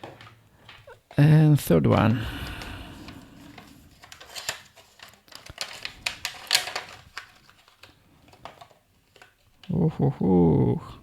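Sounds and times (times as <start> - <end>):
package clicks and scrapes: 3.5 - 9.5.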